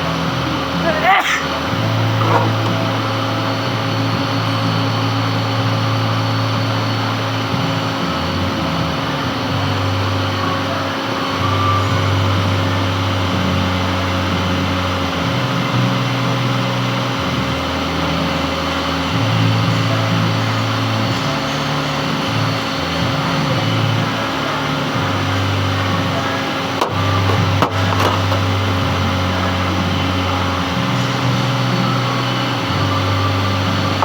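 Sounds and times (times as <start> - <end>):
metal lathe humming: 0.0 - 34.0.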